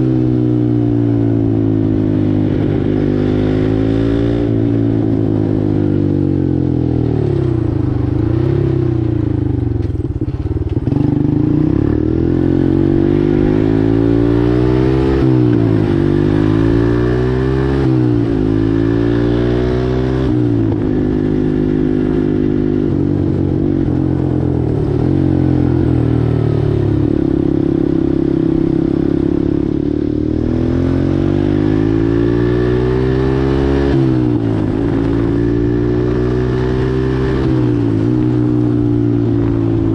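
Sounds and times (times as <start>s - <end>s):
four-wheeler engine revving: 10.7s - 39.9s.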